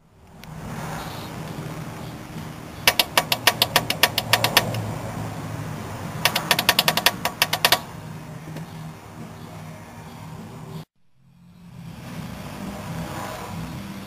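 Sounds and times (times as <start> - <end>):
engine rod knocking: 2.8 - 4.8, 6.2 - 7.9.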